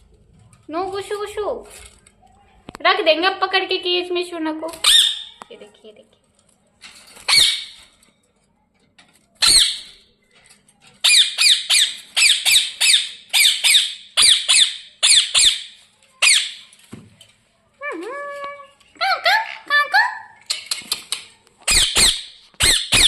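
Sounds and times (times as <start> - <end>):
parakeet screeching: 4.8 - 5.4, 7.3 - 7.8, 9.4 - 9.9, 11.0 - 16.6, 21.7 - 23.0.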